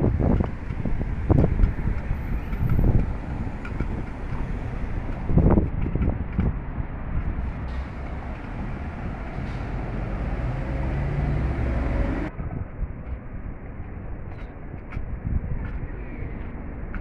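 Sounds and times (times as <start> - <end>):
vehicle engine rumbling: 0.0 - 14.6.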